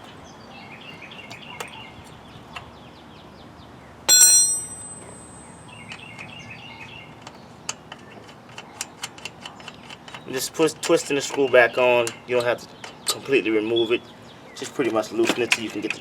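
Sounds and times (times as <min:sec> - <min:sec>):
metal tools knocking together: 0:04.1 - 0:06.0
sharp metallic clink: 0:04.1 - 0:06.0.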